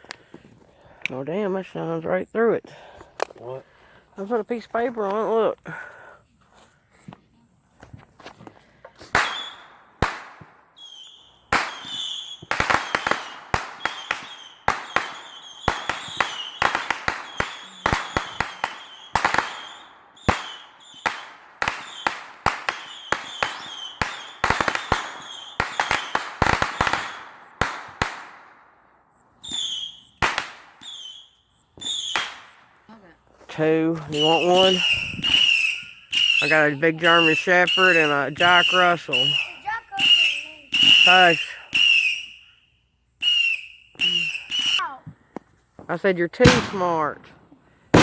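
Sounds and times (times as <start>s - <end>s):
fireworks bangs and pops: 7.8s - 28.7s, 29.4s - 32.8s, 33.6s - 42.4s, 43.2s - 48.0s.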